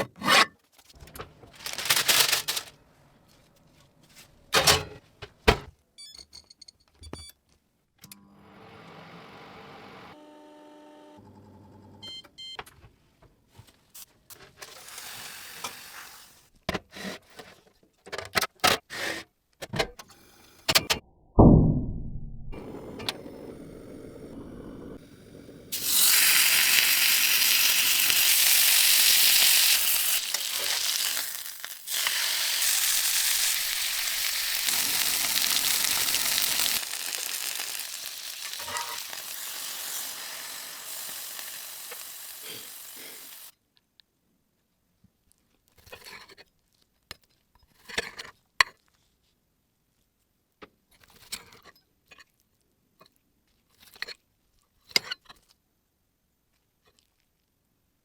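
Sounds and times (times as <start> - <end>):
sharp thump with falling tone: 21.3 - 22.8
food sizzling in a skillet: 25.7 - 43.5.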